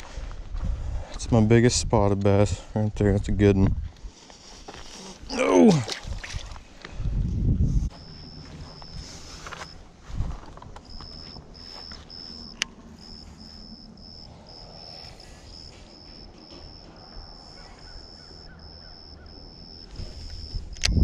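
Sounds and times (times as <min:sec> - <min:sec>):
low outdoor rumble: 0:06.5 - 0:21.0
sharp click: 0:20.7 - 0:21.0.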